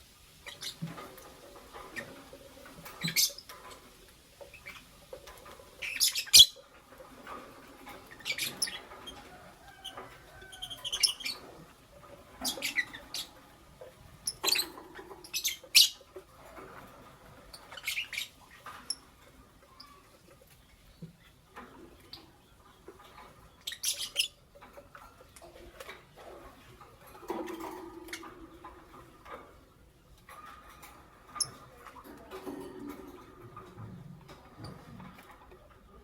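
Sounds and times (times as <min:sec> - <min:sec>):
lovebirds chirping: 0:05.8 - 0:06.8, 0:08.1 - 0:13.6, 0:14.2 - 0:16.1, 0:17.5 - 0:19.0.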